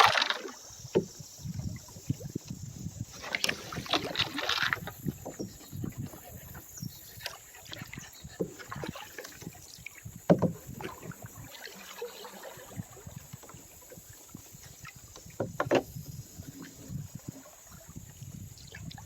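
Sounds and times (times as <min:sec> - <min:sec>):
paddle splashes: 0:00.0 - 0:19.0
paddle knocks on canoe hull: 0:10.3 - 0:11.0, 0:15.2 - 0:16.0.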